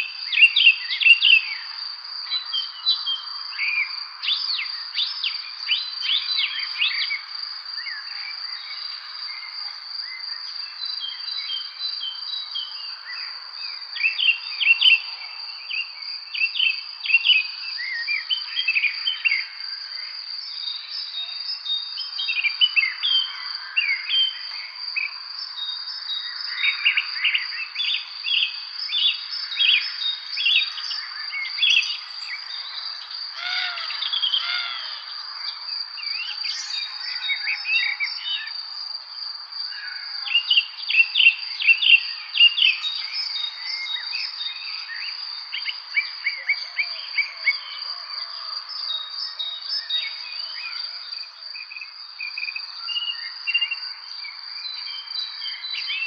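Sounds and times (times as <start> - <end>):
high-pitched insect trill: 16.8 - 56.0
birds chirping and singing: 28.4 - 38.6.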